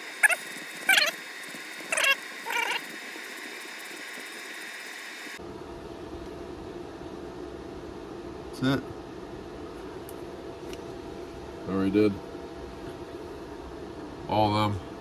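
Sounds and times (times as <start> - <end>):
short high pet calls: 0.2 - 1.2, 1.9 - 2.9.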